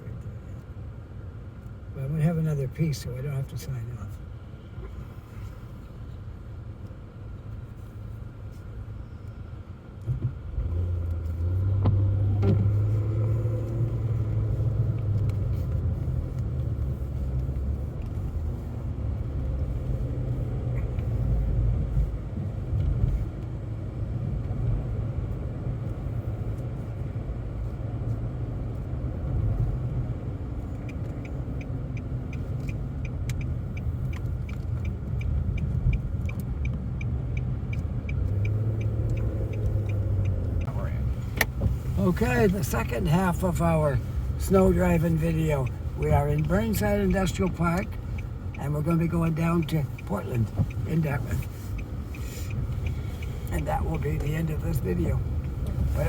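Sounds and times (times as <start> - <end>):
car road and engine rumble: 0.0 - 56.0
light even ticks: 11.0 - 18.4, 30.6 - 43.0, 44.2 - 56.0.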